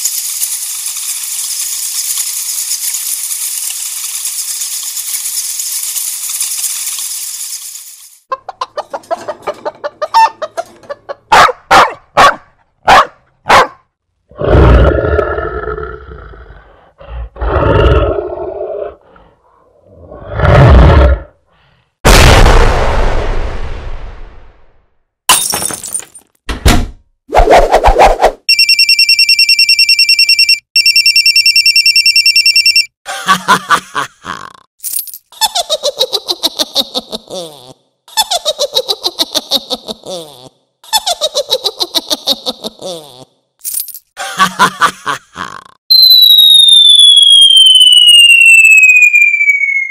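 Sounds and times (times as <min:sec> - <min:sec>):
hen-like clucking: 0:08.3 - 0:11.4
telephone bell ringing: 0:28.5 - 0:32.9.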